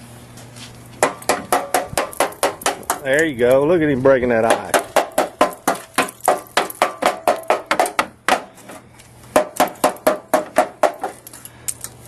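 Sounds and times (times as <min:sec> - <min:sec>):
strikes cracking ice off metal: 0:04.5 - 0:08.6.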